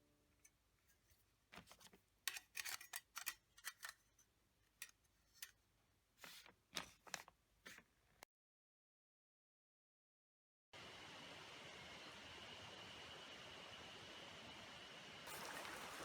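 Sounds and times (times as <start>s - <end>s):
handling clicks and scrapes: 0.8s - 5.6s.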